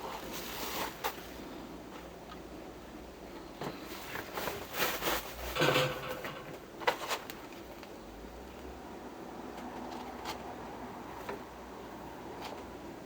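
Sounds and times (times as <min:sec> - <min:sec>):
rustling handling noise: 0:00.0 - 0:02.2, 0:03.6 - 0:08.0.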